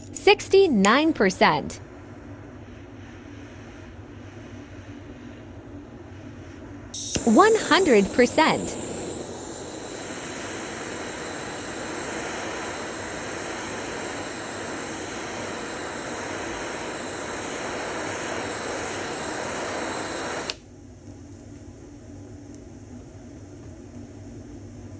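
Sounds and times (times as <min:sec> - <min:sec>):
lighter flame hissing: 0:06.9 - 0:21.6.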